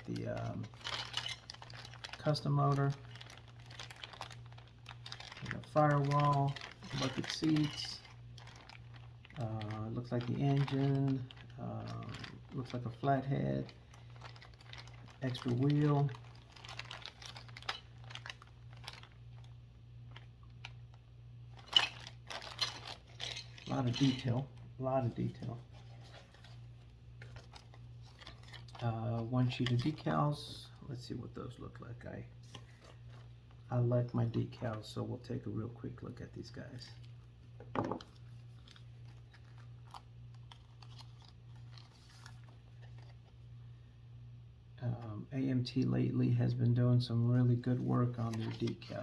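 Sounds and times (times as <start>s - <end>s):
plastic bags crinkling: 0.0s - 20.9s, 21.5s - 30.6s, 36.4s - 43.4s, 47.5s - 49.0s.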